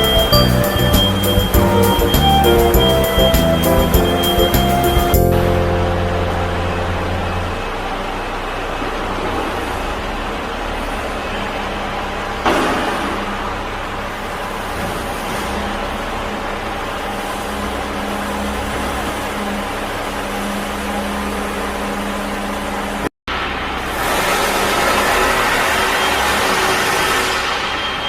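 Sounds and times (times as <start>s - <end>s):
machinery humming: 0.0s - 12.4s.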